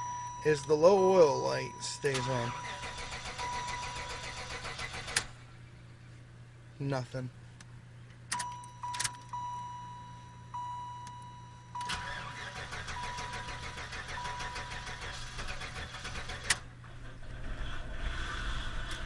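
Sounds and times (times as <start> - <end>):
warning chime dinging: 0.0 - 4.4, 8.4 - 14.8
engine cranking on starter: 2.1 - 5.3, 11.8 - 19.0.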